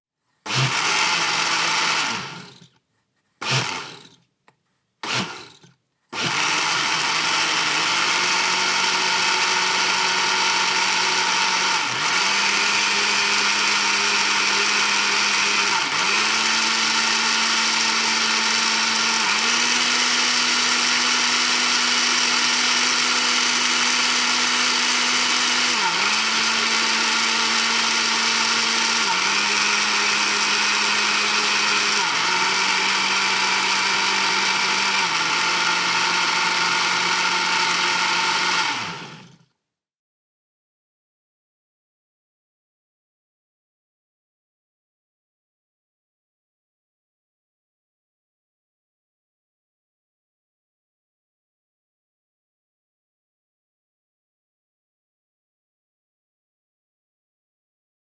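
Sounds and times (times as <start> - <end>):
kitchen blender running: 0.5 - 2.7, 3.4 - 4.2, 5.0 - 39.4.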